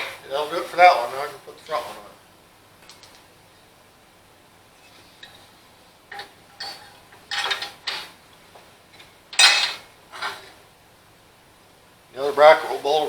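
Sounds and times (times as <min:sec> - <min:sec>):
metal bracket and bolts clanking: 0:06.1 - 0:08.2, 0:09.0 - 0:10.5.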